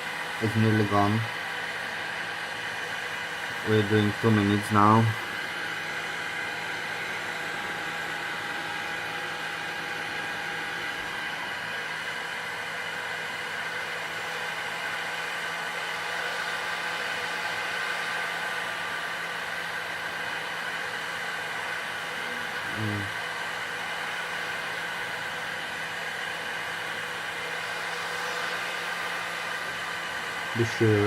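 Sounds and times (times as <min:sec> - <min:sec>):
heat gun blowing: 0:00.0 - 0:31.0.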